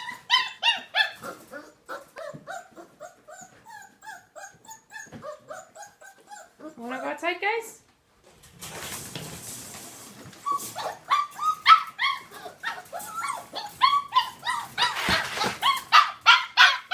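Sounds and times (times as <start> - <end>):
dog barking in high yips: 0.0 - 1.4, 10.8 - 16.9
rustling noise: 8.0 - 11.5, 12.3 - 16.0.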